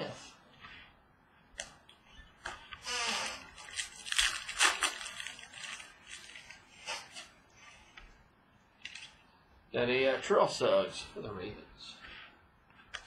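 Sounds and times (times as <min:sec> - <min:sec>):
crinkly packaging rustling: 0:03.2 - 0:07.8, 0:08.8 - 0:09.2.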